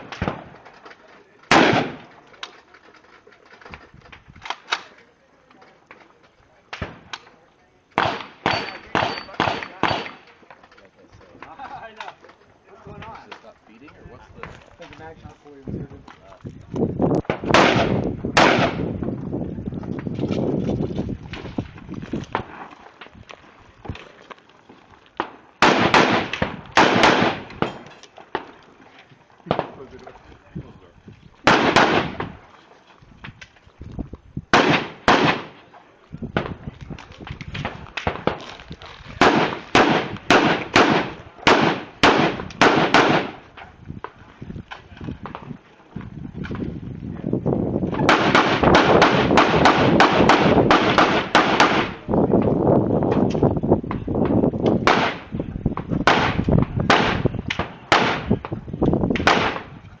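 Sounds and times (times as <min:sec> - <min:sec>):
rifle gunshots: 0:00.0 - 0:00.6, 0:01.5 - 0:02.2, 0:08.0 - 0:10.3, 0:17.3 - 0:19.0, 0:25.2 - 0:28.6, 0:31.4 - 0:32.4, 0:34.5 - 0:35.6, 0:39.2 - 0:43.5, 0:48.0 - 0:52.0, 0:54.8 - 0:55.4, 0:56.0 - 0:58.4, 0:59.2 - 0:59.8
quieter cracks: 0:00.0 - 0:15.3, 0:15.9 - 0:30.4, 0:31.4 - 0:46.8, 0:47.9 - 0:59.9.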